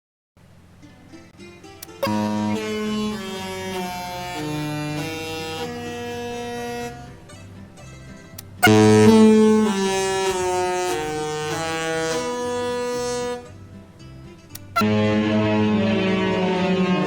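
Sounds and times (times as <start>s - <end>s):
musical ship horn tune: 2.0s - 7.6s, 8.6s - 14.0s, 14.7s - 17.0s
sharp clicks: 14.5s - 14.8s.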